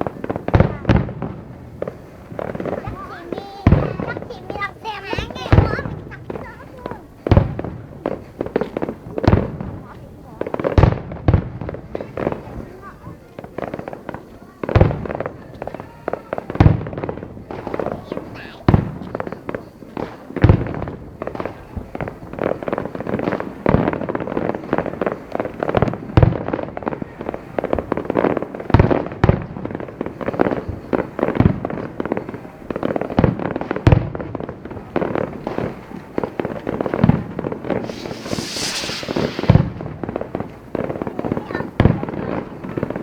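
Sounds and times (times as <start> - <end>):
fireworks booming: 0.0 - 12.8, 33.0 - 43.0
high hiss: 37.7 - 40.4.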